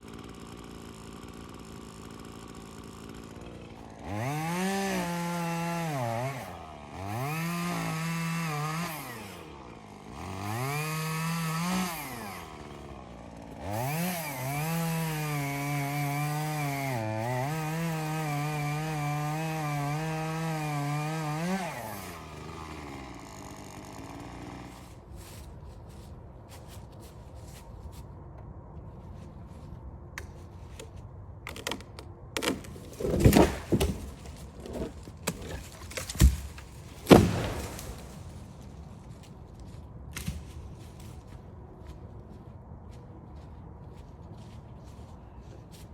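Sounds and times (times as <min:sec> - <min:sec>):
chainsaw revving: 0:00.0 - 0:25.0, 0:32.5 - 0:38.4.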